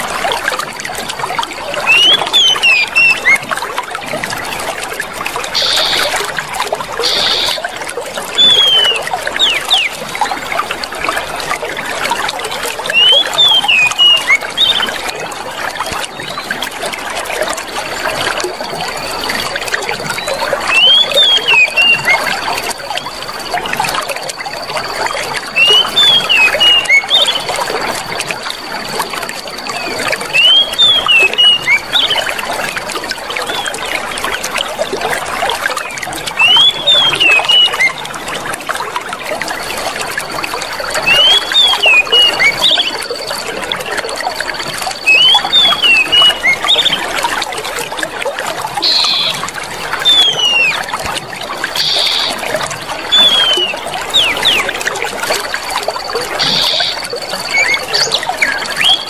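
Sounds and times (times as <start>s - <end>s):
water running and trickling: 0.0s - 59.0s
high chirps: 5.6s - 6.2s, 7.0s - 7.7s, 8.4s - 10.0s, 12.9s - 14.9s, 44.9s - 46.9s, 48.8s - 49.4s, 50.1s - 50.9s, 51.7s - 52.5s, 53.1s - 54.8s, 56.0s - 59.0s.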